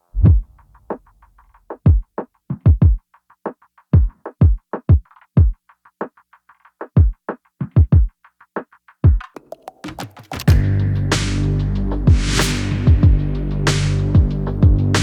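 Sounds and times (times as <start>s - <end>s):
deep kick drums: 0.2s - 1.2s, 12.0s - 12.3s, 12.9s - 13.4s, 14.2s - 14.9s
drum machine beat: 0.2s - 2.1s, 2.7s - 3.0s, 4.0s - 5.6s, 9.0s - 10.8s, 12.9s - 13.3s.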